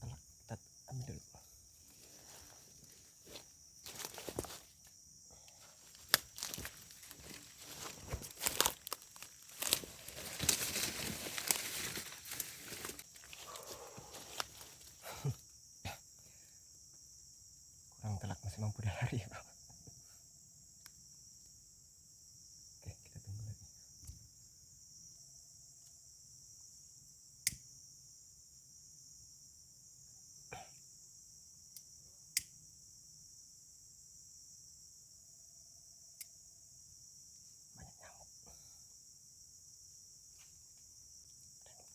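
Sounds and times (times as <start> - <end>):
crickets chirping: 0.0 - 41.9
twigs snapping and crackling: 5.6 - 14.9
footsteps through leaf litter: 5.9 - 13.0.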